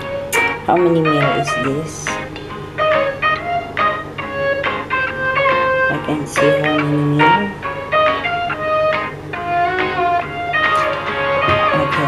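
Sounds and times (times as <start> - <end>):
plucked melody: 0.0 - 12.0.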